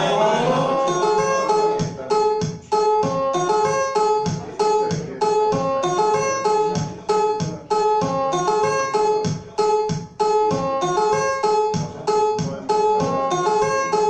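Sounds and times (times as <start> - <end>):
dance music with plucked melody: 0.0 - 14.0.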